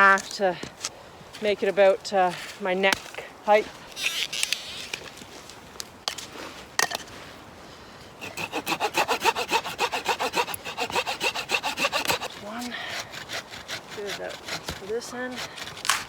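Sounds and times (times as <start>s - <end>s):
hand saw cutting wood: 8.2s - 16.0s.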